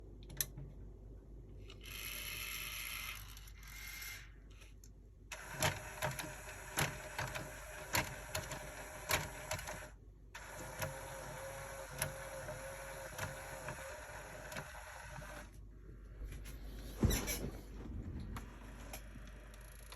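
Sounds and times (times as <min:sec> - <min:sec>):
small motor whirring: 0:01.8 - 0:04.3.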